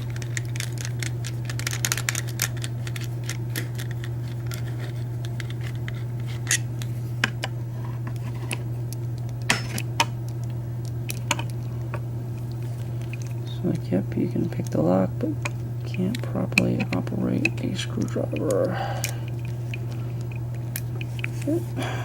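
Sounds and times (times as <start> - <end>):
steady low hum: 0.0 - 22.0
screwdriver clicking and scraping metal: 15.4 - 18.7.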